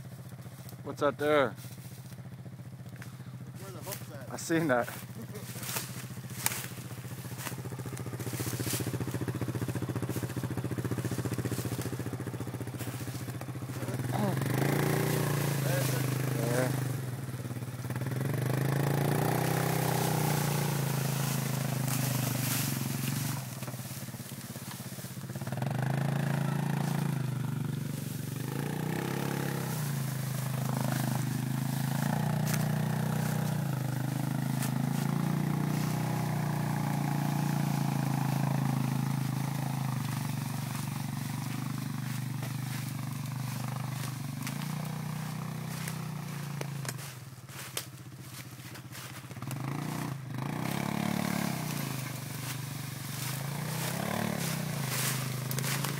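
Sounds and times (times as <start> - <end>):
vehicle engine revving: 0.0 - 55.9.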